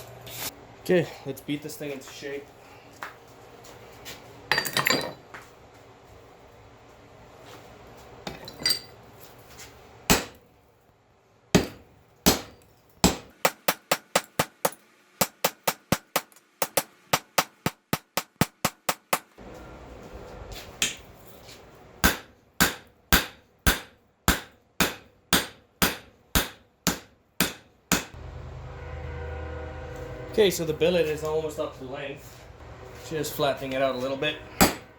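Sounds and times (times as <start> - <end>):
hammer blows ringing on hot steel: 11.6 - 19.0, 22.0 - 28.2, 34.5 - 34.9.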